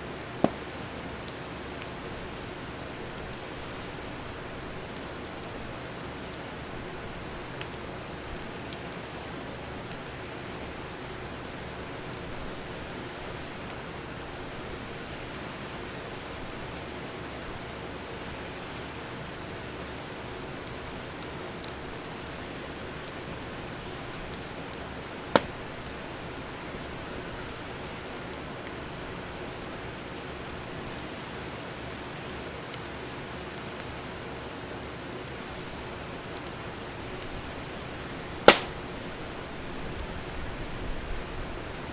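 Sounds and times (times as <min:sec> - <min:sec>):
campfire hissing and crackling: 0:00.0 - 0:39.0
sharp loud fire pop: 0:00.4 - 0:01.2, 0:25.4 - 0:25.7, 0:38.5 - 0:38.9.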